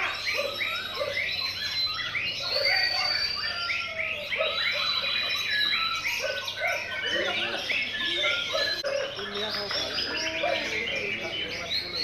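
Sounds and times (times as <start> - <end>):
long bird whistles: 0.0 - 8.8
songbirds chirping and trilling: 0.0 - 12.0.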